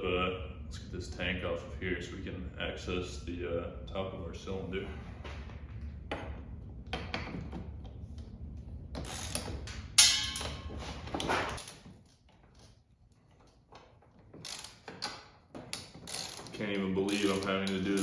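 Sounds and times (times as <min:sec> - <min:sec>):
low hum: 0:00.0 - 0:11.6
tools clicking and knocking: 0:09.0 - 0:18.0.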